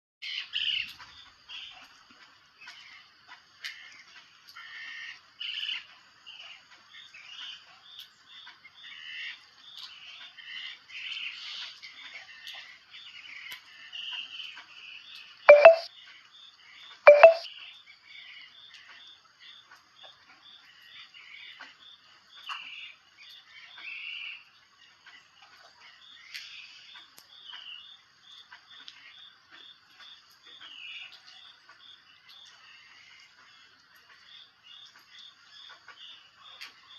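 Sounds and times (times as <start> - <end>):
repeated short bird notes: 17.1 - 17.5.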